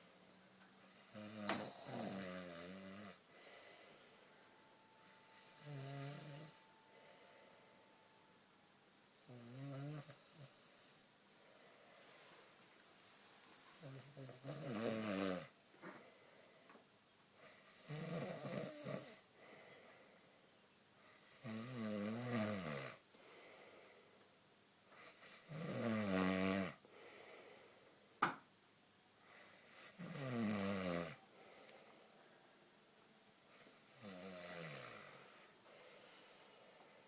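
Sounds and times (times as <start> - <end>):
man snoring: 0.9 - 3.2, 5.4 - 6.7, 9.3 - 11.0, 13.8 - 15.5, 17.6 - 19.2, 21.2 - 23.0, 25.2 - 26.8, 29.6 - 31.2, 34.0 - 35.3.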